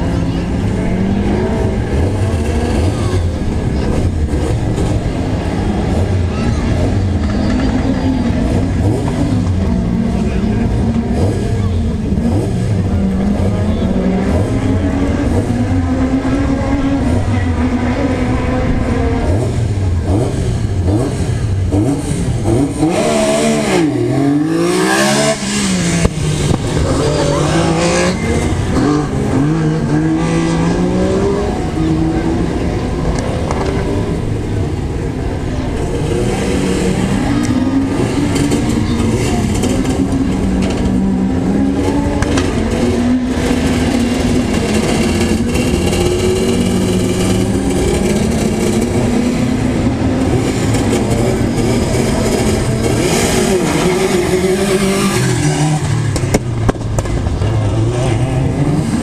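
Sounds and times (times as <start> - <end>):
rally car engine rumbling: 0.0 - 59.0.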